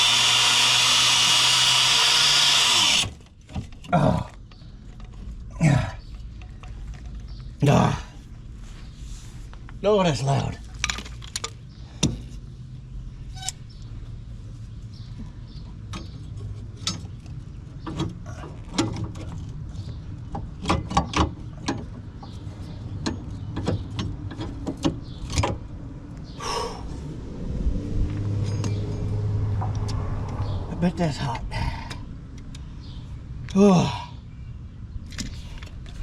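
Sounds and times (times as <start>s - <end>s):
steady low hum: 25.6s - 33.5s.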